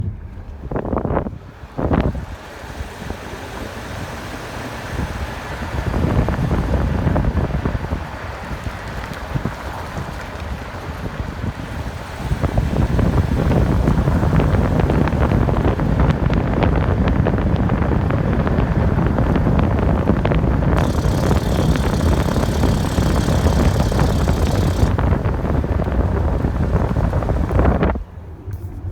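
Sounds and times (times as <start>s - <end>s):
car engine rumbling: 0.0s - 9.6s, 12.0s - 28.9s
high hiss: 20.8s - 25.0s
rapid irregular clicks: 20.8s - 25.0s.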